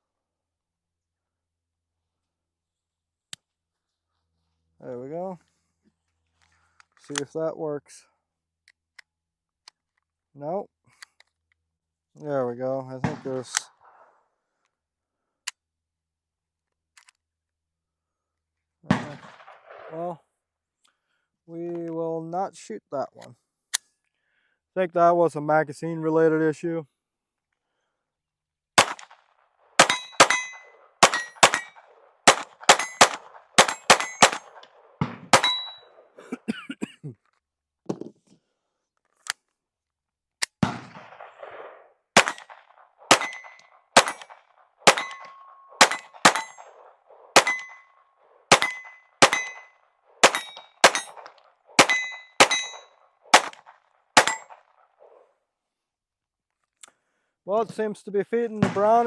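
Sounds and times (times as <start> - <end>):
pistol shots: 28.8 - 29.2, 29.8 - 35.9, 40.6 - 47.9, 48.5 - 54.7, 58.6 - 59.0
short metallic ring: 29.8 - 31.8, 35.4 - 36.0, 51.8 - 52.9.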